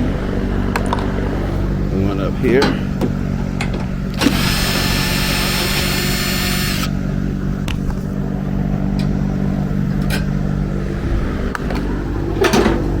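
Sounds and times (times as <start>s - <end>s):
steady low hum: 0.0s - 13.0s
drill whining: 4.1s - 7.0s.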